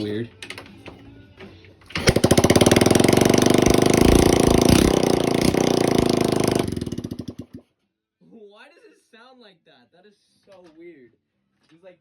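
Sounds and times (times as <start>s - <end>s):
engine popping without exhaust: 2.0s - 7.6s.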